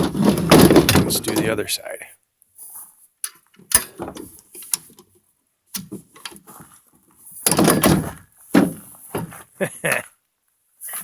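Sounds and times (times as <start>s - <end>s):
metal stand clicks and knocks: 3.2s - 4.9s.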